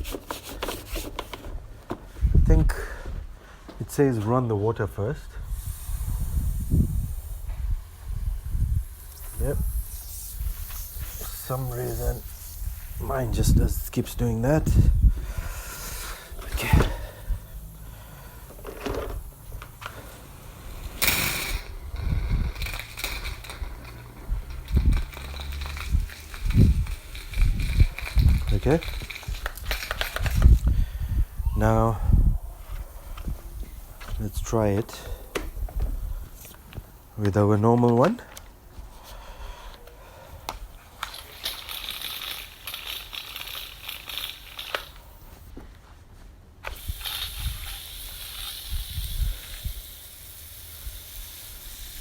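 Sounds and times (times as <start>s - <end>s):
rustling handling noise: 0.0s - 2.3s
pressure washer spray hissing: 5.4s - 37.2s, 46.7s - 52.0s
plastic clicks and rattling: 22.5s - 30.6s.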